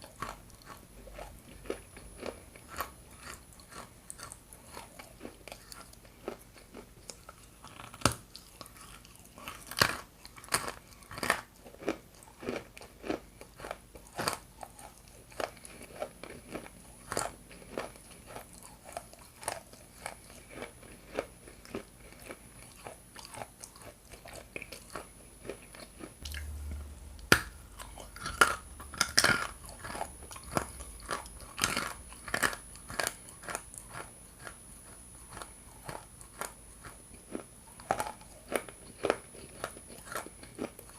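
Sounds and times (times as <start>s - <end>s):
person crunching hard chunks: 0.0s - 26.4s, 27.2s - 40.9s.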